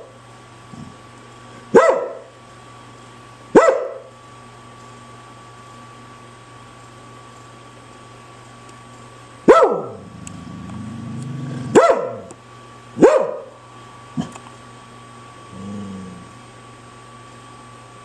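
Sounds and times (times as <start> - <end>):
dog barking: 1.7 - 2.3, 3.5 - 4.1, 9.5 - 10.1, 11.7 - 12.3, 13.0 - 13.6.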